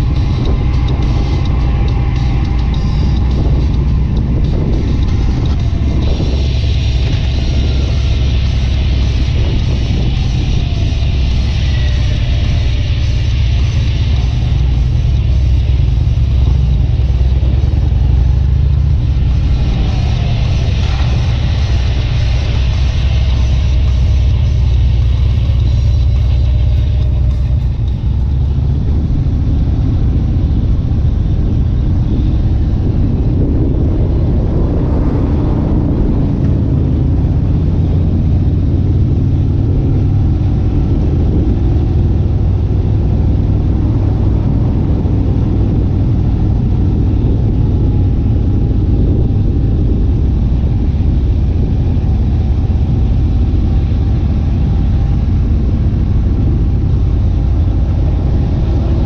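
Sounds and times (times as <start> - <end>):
motor vehicle rumbling: 0.0 - 59.0.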